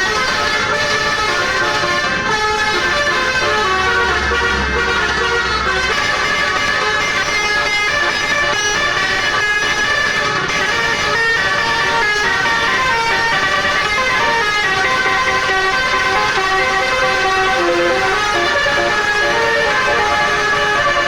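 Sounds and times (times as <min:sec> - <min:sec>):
bus air horn playing a tune: 0:00.0 - 0:21.0.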